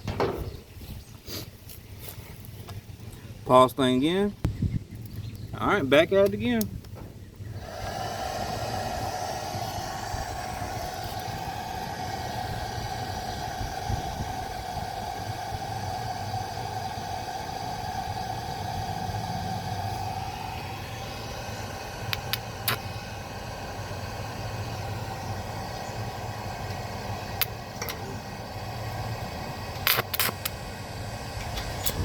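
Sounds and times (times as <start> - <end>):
low hum: 6.8 - 32.0
arc welding buzzing crackle: 7.9 - 32.0.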